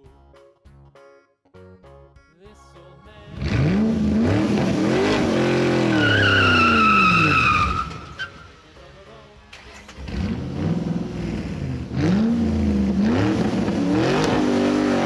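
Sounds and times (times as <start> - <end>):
cartoon car engine revving: 3.3 - 8.6, 9.6 - 15.0
high tyre screech: 3.5 - 8.7.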